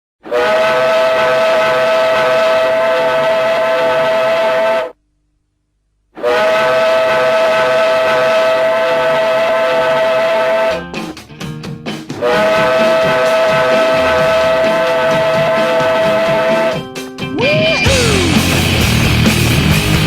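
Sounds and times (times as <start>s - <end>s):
goal horn blasts: 12.2s - 16.8s.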